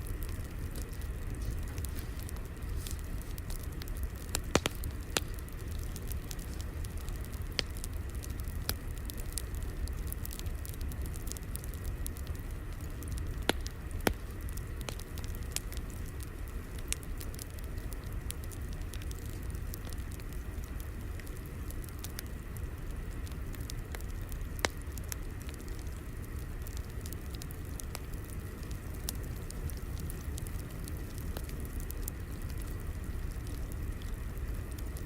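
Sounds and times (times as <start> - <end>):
sharp pops of fire: 0.0 - 35.0
wood fire crackling: 0.0 - 35.0.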